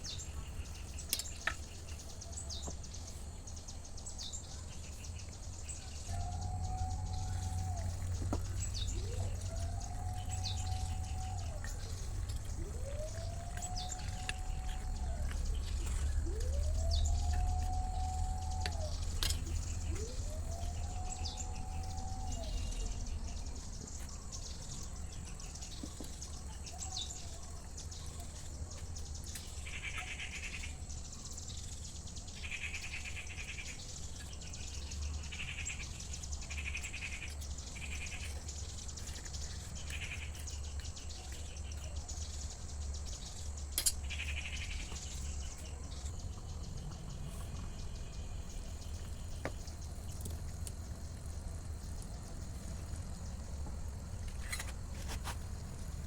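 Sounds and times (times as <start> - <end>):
steady low rumble: 5.0 - 26.5
animal calls rising in pitch: 6.0 - 23.4.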